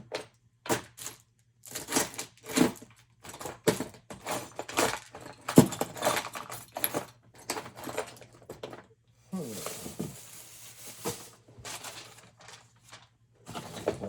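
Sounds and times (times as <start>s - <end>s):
metal tools clattering and jangling: 3.3s - 8.4s.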